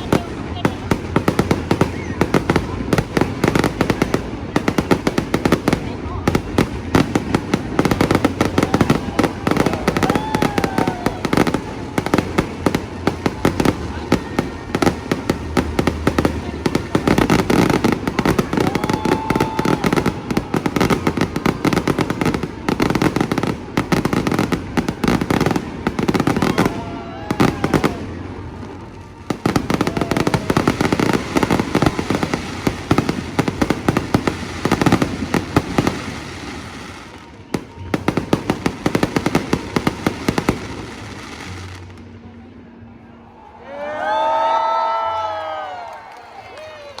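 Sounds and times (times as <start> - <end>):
fireworks bangs and crackles: 0.0 - 42.7.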